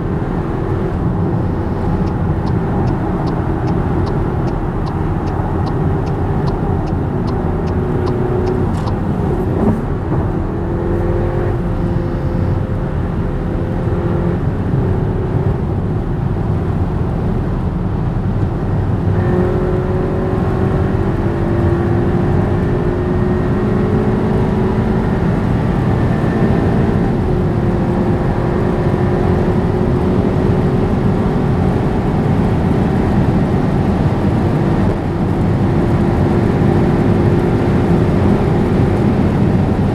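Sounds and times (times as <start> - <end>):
car engine drone: 0.0 - 39.9
road and wind noise: 0.0 - 39.9
light regular ticking: 1.3 - 9.4.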